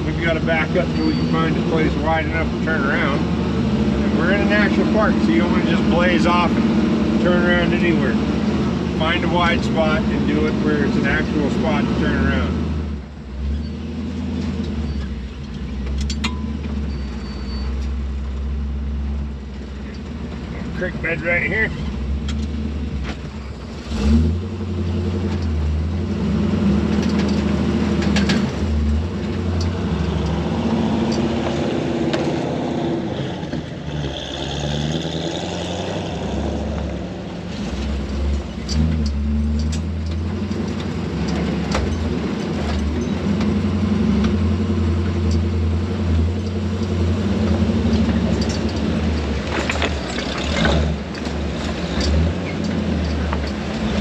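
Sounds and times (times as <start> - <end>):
truck engine running: 0.0 - 54.0
sharp knocks and bumps: 26.8 - 34.2, 36.8 - 54.0.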